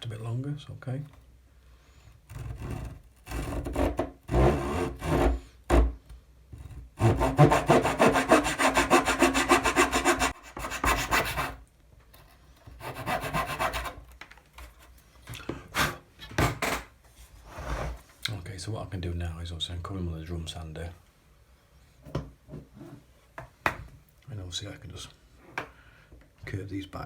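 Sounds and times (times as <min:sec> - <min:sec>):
hand tool rasping on wood: 0:02.3 - 0:05.4, 0:07.0 - 0:11.6, 0:12.8 - 0:14.0.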